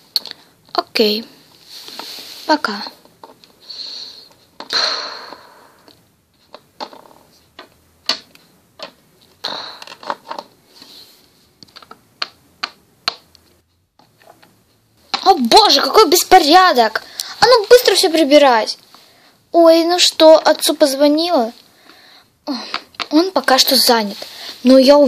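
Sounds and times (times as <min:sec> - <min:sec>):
plastic toys clicking and knocking: 0:05.9 - 0:10.6, 0:11.6 - 0:15.4, 0:22.6 - 0:23.5.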